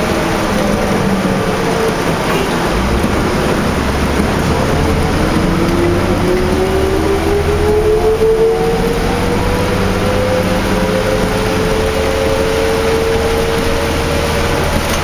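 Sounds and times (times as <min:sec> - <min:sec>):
bus engine and transmission: 0:00.0 - 0:15.0
rain hissing: 0:00.0 - 0:15.0
road noise: 0:00.0 - 0:15.0.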